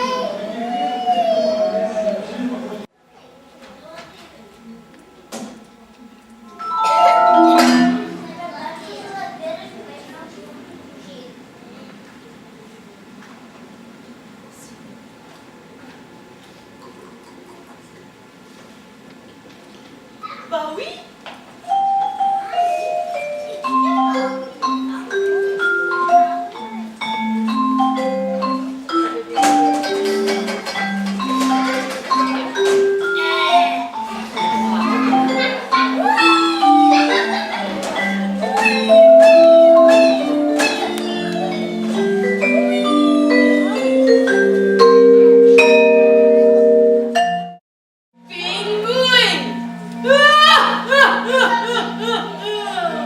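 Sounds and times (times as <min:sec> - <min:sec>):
instrumental melody of struck notes: 0:06.2 - 0:08.6, 0:21.6 - 0:47.6, 0:48.5 - 0:53.0.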